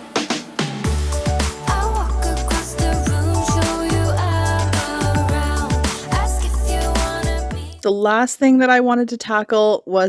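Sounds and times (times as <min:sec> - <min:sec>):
upbeat pop music with deep bass: 0:00.8 - 0:07.8.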